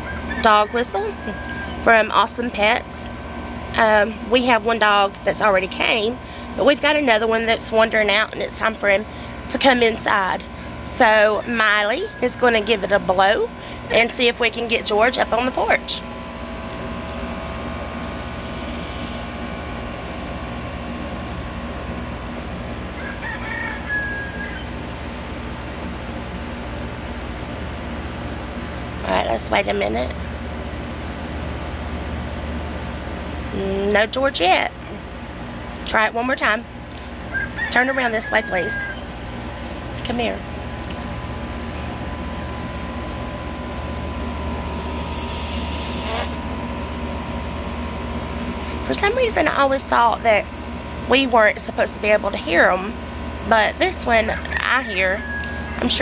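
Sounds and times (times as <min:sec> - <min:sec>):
high-pitched whistle tone: 0:17.8 - 0:19.4, 0:23.8 - 0:25.4, 0:37.8 - 0:39.9, 0:44.5 - 0:46.4
high dog whistle: 0:23.8 - 0:25.4, 0:44.6 - 0:46.4.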